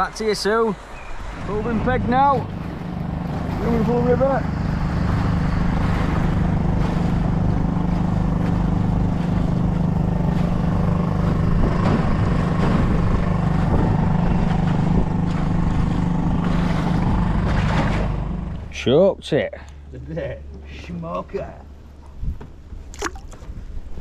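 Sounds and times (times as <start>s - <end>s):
boat motor running: 0.0s - 24.0s.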